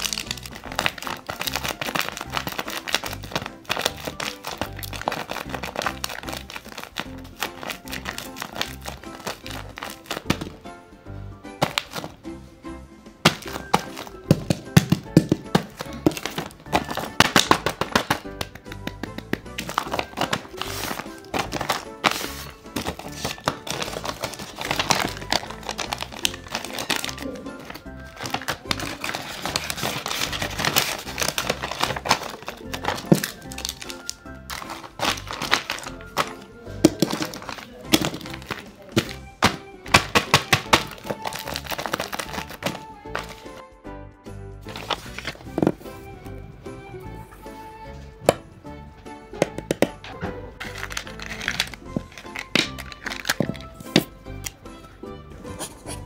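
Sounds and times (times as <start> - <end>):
paper bag crinkling: 0.0 - 10.5, 13.2 - 14.6, 15.2 - 18.4, 19.5 - 43.5, 44.7 - 45.7, 50.6 - 54.1
background music with low beat: 0.1 - 29.2, 29.8 - 56.0.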